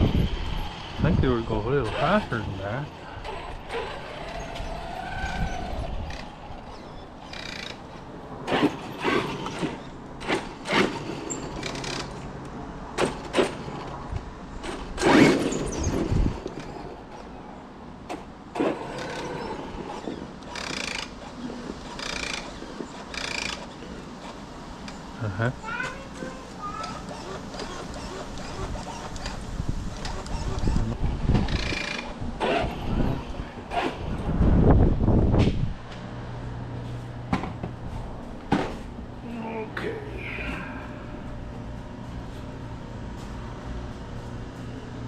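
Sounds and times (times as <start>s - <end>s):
electric rc car running: 0.0s - 12.3s, 14.6s - 17.6s, 18.5s - 25.0s, 25.7s - 34.3s.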